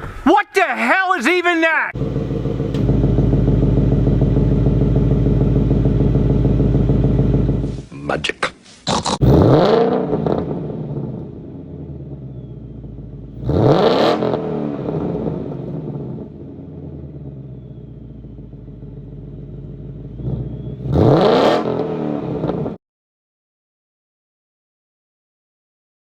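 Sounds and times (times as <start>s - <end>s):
car engine idling and revving: 2.0s - 7.8s, 9.2s - 22.8s.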